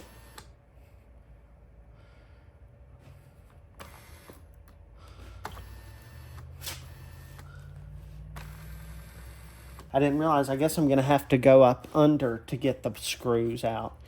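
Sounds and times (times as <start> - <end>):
electric seat motor humming: 0.0 - 0.6, 3.0 - 11.0.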